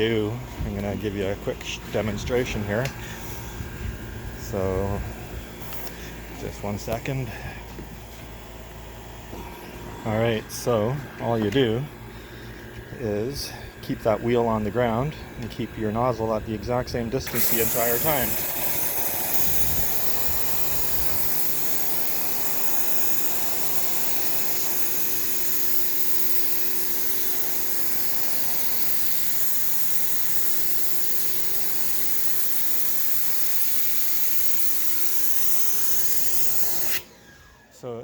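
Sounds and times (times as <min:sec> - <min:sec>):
steady hum: 0:00.0 - 0:38.0
pressure washer spraying wood: 0:05.6 - 0:06.1, 0:17.2 - 0:37.2.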